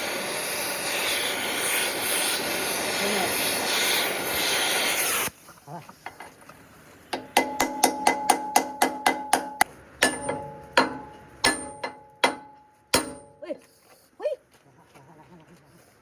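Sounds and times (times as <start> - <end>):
hammer striking steel: 7.1 - 13.5.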